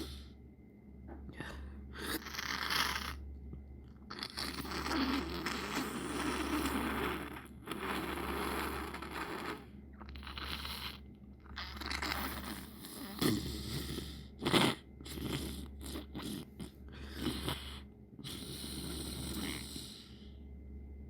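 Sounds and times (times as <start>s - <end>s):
wet gurgly sniffling: 4.1s - 20.3s.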